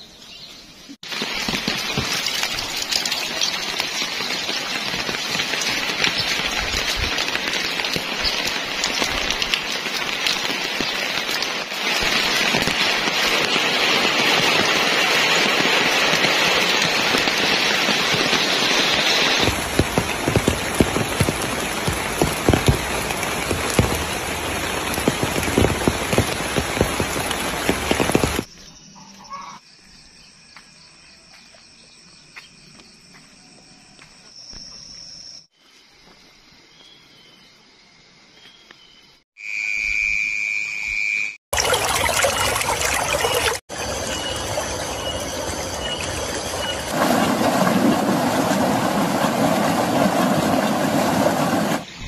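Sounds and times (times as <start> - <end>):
rain pattering: 1.0 - 28.5, 41.6 - 51.9.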